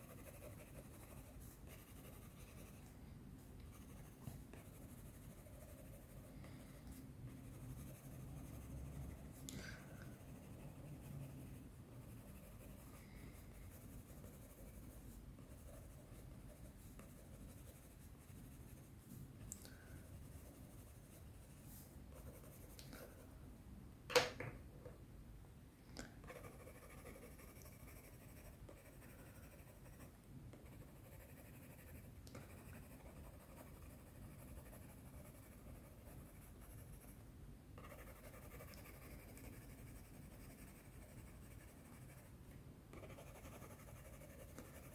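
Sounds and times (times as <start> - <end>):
pencil scratching on paper: 0.0 - 2.9, 3.6 - 19.3, 20.0 - 23.2, 26.3 - 37.2, 37.8 - 42.3, 42.9 - 44.9.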